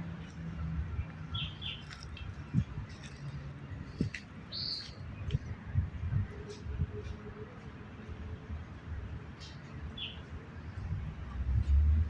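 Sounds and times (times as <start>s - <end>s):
birds chirping: 0.1s - 5.8s, 9.4s - 10.9s.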